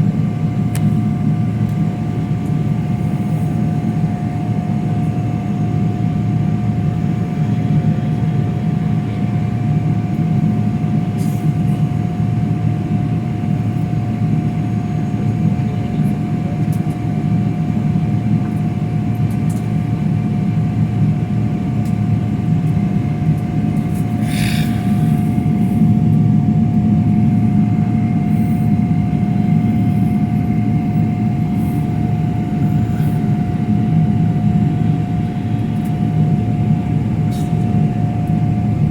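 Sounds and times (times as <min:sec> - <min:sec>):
airliner cabin rumble: 0:00.0 - 0:38.9
constant whine: 0:17.8 - 0:38.9.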